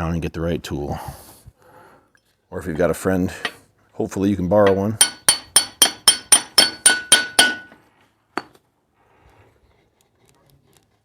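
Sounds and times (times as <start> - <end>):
hammer tapping on metal: 4.6 - 7.8.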